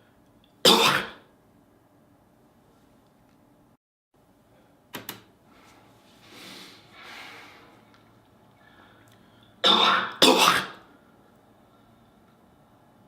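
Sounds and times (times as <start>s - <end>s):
person coughing: 0.7s - 1.3s, 9.6s - 10.8s
person breathing: 5.5s - 9.6s.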